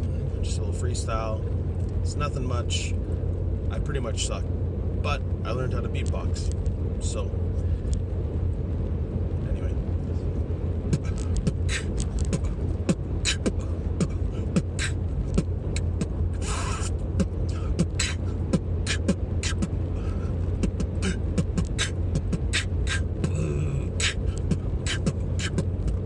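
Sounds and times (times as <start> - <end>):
low engine hum: 0.0 - 26.0
person beatboxing: 10.9 - 26.0.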